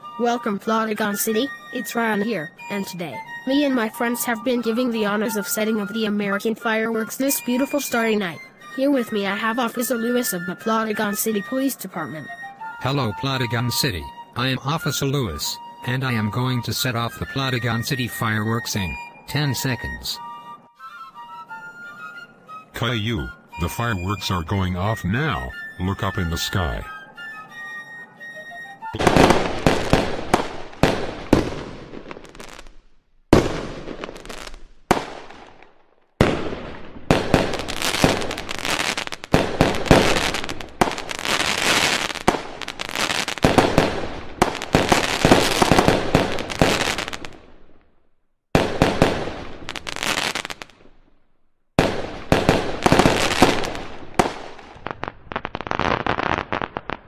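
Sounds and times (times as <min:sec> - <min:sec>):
fireworks bangs and crackling: 0:29.0 - 0:32.7, 0:33.3 - 0:47.6, 0:48.5 - 0:50.9, 0:51.8 - 0:57.0.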